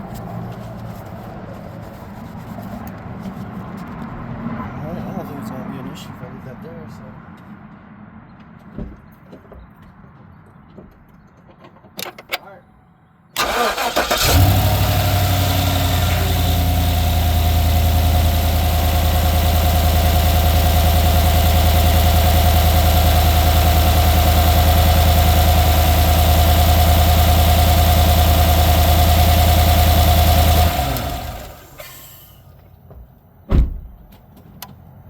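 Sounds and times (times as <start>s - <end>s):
engine idling: 13.4s - 32.5s
engine cranking and catching: 13.4s - 32.6s.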